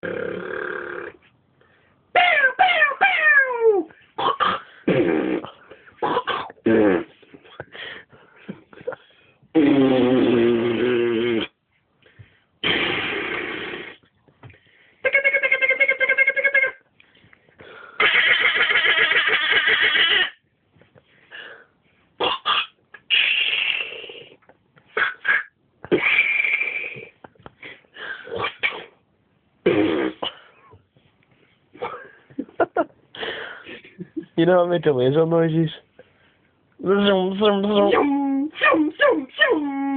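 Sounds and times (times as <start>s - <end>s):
man imitating gunfire with mouth: 9.5s - 11.6s, 12.6s - 14.0s, 25.0s - 27.1s
man imitating gunfire vocally: 36.9s - 39.9s.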